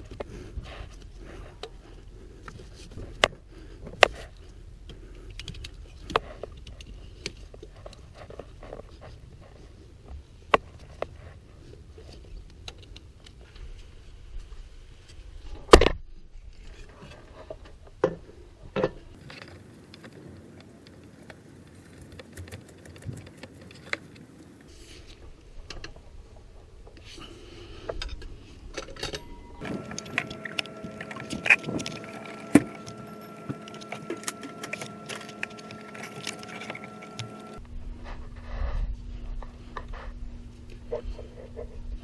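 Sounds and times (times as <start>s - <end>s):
steady multi-tone hum: 23.4s - 42.0s
hand tools and metal parts clanking: 27.9s - 37.6s.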